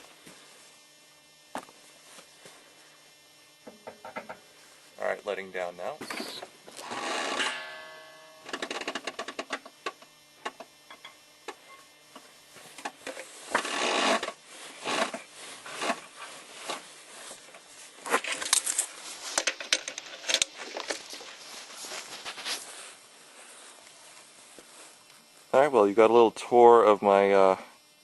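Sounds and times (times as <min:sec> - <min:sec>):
jack metallic clicks and knocks: 0:03.7 - 0:04.4.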